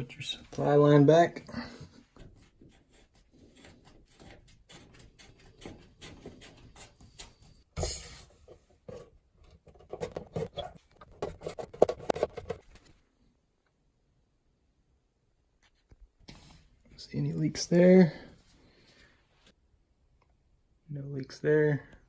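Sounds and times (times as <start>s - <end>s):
fitting clicks and scrapes: 1.7s - 13.0s.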